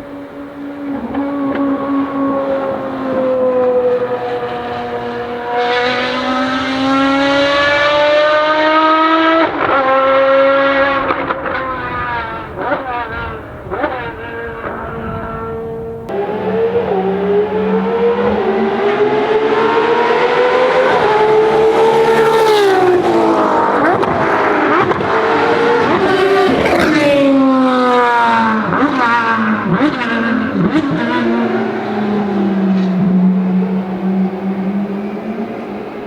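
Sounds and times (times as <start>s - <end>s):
race car engine revving: 0.0s - 36.0s.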